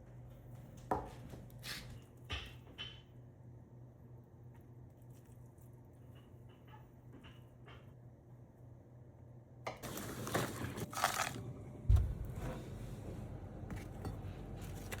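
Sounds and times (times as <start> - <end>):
kitchen items clinking: 9.8 - 11.4.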